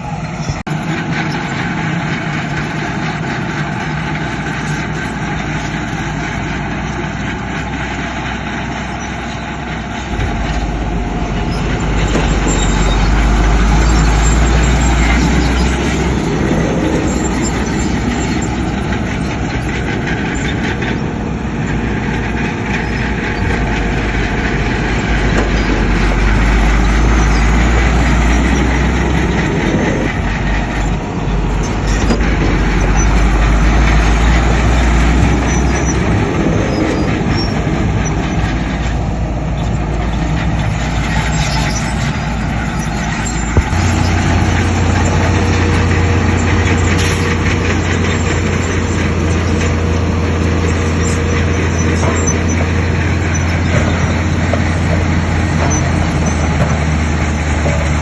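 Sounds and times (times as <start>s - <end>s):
diesel earthmoving machinery rumbling: 0.0s - 58.0s.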